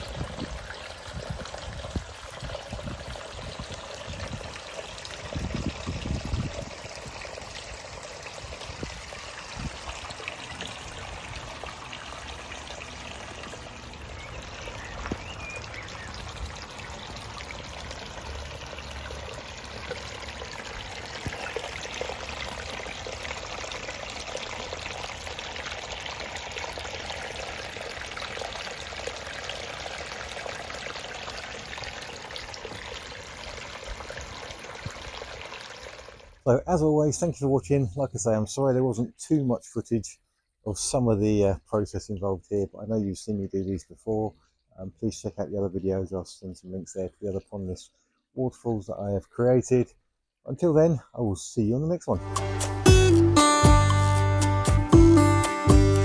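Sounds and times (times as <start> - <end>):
water trickling over rocks: 0.0 - 37.3.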